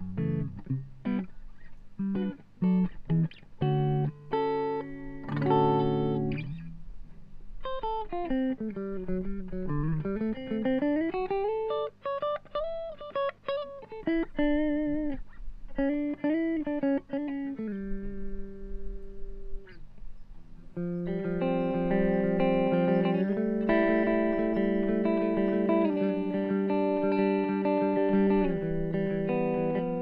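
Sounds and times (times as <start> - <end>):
electric guitar playing: 0.0 - 30.0.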